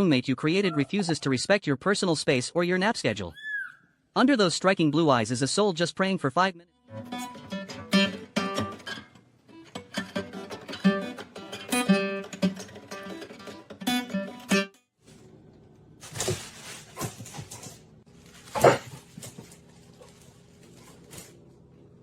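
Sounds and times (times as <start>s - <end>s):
acoustic guitar strumming: 6.8s - 14.8s
dog barking: 18.5s - 19.0s.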